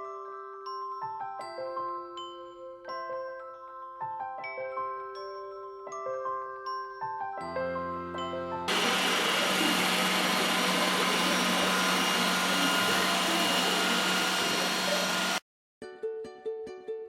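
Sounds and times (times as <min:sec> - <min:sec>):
robot vacuum whirring: 0:08.7 - 0:15.4.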